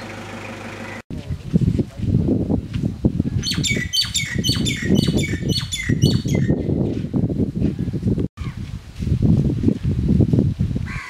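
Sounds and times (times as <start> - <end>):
constant low rumble: 0.0 - 3.4
bird calling: 3.4 - 6.6.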